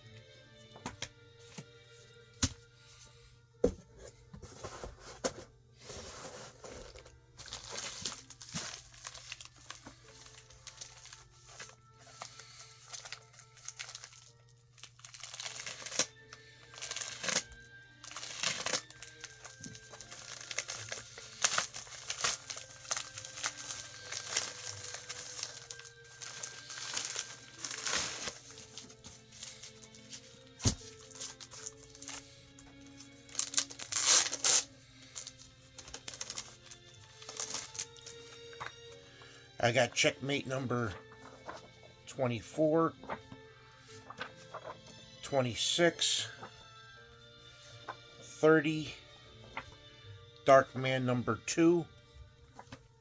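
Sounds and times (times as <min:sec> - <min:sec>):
quiet music: 0:00.0 - 0:53.0
paper crinkling and rustling: 0:04.4 - 0:45.0.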